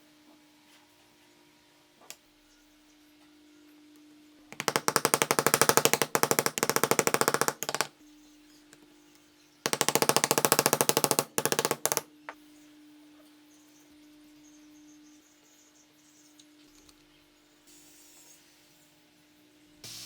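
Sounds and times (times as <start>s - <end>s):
power tool rattling hammering: 4.6s - 7.9s, 9.7s - 12.0s.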